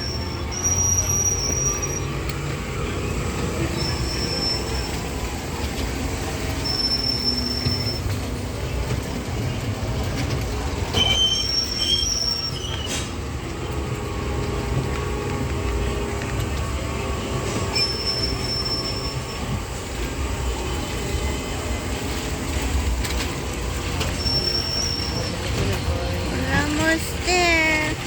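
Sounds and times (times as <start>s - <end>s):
high-pitched wheel squeals: 0.0s - 2.5s, 3.4s - 5.2s, 6.5s - 8.3s, 10.9s - 13.3s, 17.5s - 19.8s, 23.9s - 25.8s
ride car rumbling on track: 0.0s - 28.0s.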